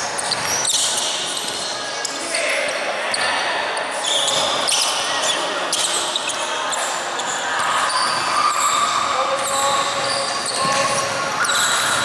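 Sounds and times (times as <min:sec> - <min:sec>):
sneakers squeaking on court: 0:00.0 - 0:12.0
voices echoing in hall: 0:00.0 - 0:12.0
basketball bouncing: 0:10.0 - 0:11.2.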